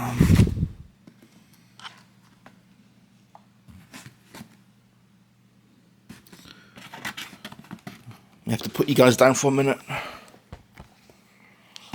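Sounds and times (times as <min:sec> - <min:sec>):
low steady hum: 0:00.0 - 0:11.9
soft handling clicks and rustles: 0:06.1 - 0:08.8.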